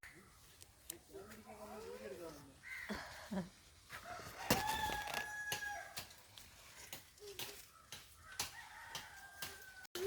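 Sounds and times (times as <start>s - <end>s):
rooster crowing: 3.9s - 6.1s, 8.2s - 10.0s.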